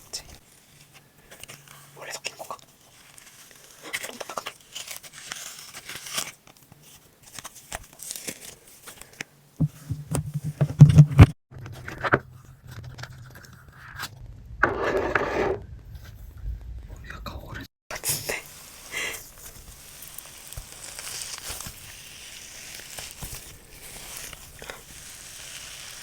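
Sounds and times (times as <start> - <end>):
slime crackling and tearing: 3.0 - 6.4, 18.2 - 26.0.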